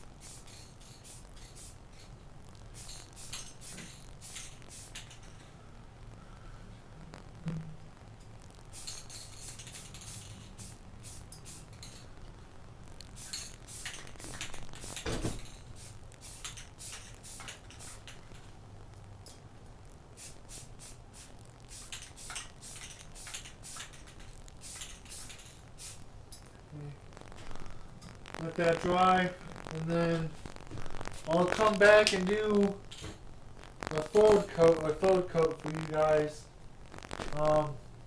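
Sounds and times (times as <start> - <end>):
spray-paint can hissing: 0.2 - 2.1, 2.7 - 5.3, 8.7 - 12.0, 13.2 - 18.2, 20.2 - 26.0.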